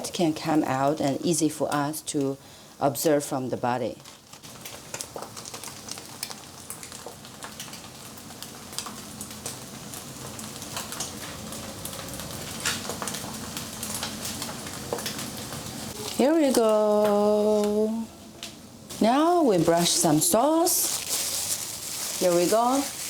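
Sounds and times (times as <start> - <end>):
egg sizzling in a pan: 4.0 - 18.0, 18.9 - 23.0.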